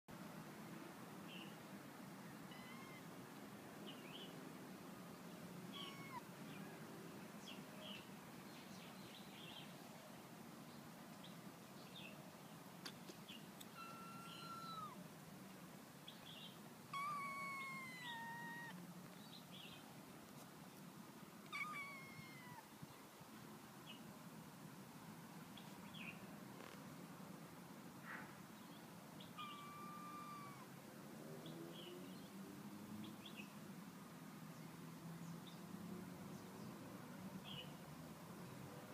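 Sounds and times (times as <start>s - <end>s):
kitten meows falling in pitch: 2.5s - 3.1s, 5.8s - 6.2s, 13.8s - 15.0s, 16.9s - 18.8s, 21.5s - 22.6s, 29.4s - 30.7s
kittens squeaking: 2.5s - 3.1s, 5.8s - 6.2s, 13.7s - 15.0s, 16.9s - 18.8s, 21.5s - 22.6s, 29.4s - 30.6s.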